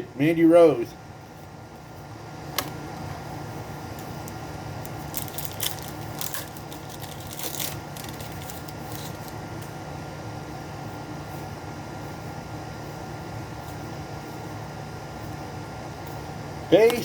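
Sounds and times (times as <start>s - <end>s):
steady low hum: 0.0s - 17.0s
foil wrapper crinkling: 4.2s - 9.4s.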